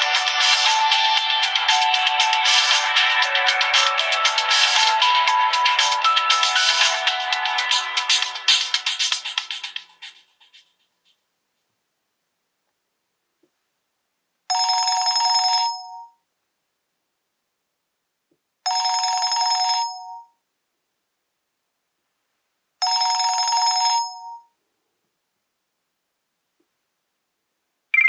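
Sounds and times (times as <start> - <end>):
phone ringtone: 0.0 - 10.0, 14.5 - 16.2, 18.7 - 20.4, 22.8 - 24.6.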